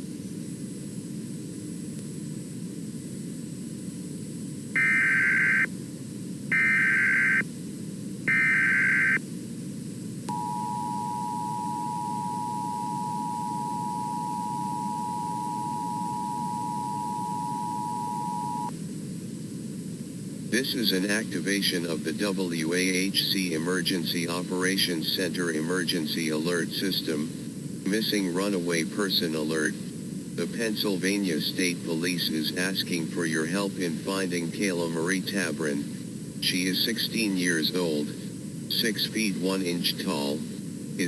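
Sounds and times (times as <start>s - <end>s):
low background noise: 0.0s - 41.0s
steady dual attention tone: 4.8s - 5.7s, 6.5s - 7.5s, 8.2s - 9.2s, 10.2s - 18.7s
warbling data tones: 4.8s - 5.7s, 6.5s - 7.4s, 8.3s - 9.2s, 10.3s - 18.7s.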